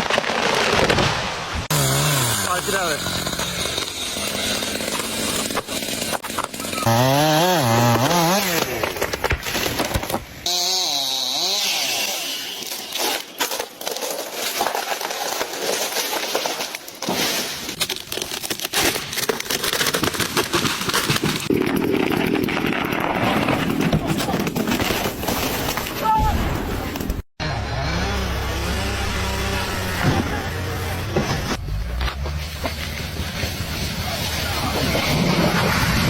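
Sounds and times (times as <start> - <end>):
chainsaw revving: 1.6 - 8.8, 10.4 - 12.6, 27.4 - 31.6.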